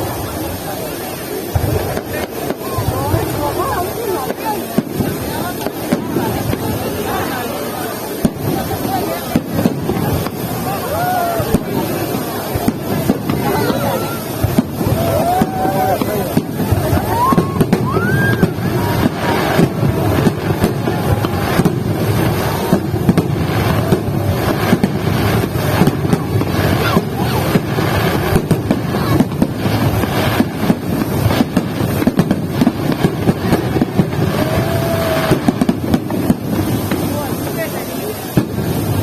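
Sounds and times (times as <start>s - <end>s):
fireworks bangs and crackles: 0.0s - 39.0s
firework rising whistle: 7.1s - 37.7s.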